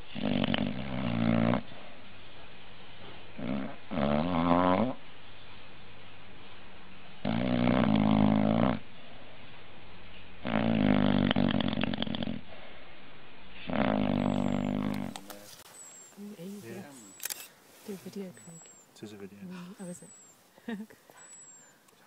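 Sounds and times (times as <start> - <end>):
animal snoring: 0.0 - 1.8, 3.3 - 5.0, 7.2 - 8.9, 10.4 - 12.8, 13.6 - 15.2.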